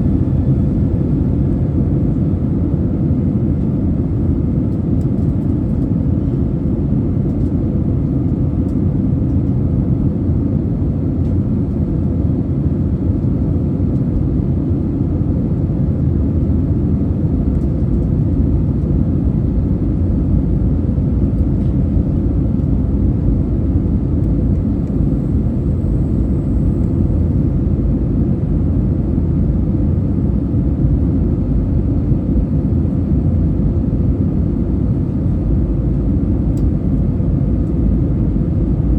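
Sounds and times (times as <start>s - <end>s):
airplane cabin engine rumble: 0.0s - 38.9s
faint steady hum: 24.2s - 29.2s.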